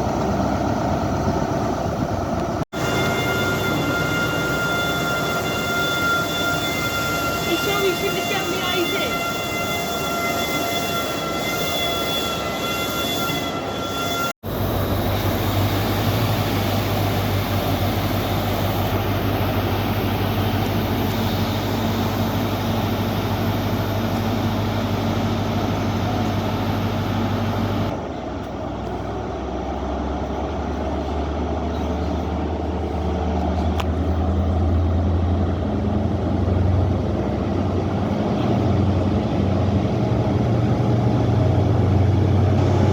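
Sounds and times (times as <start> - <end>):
diesel train engine drone: 0.0 - 42.9.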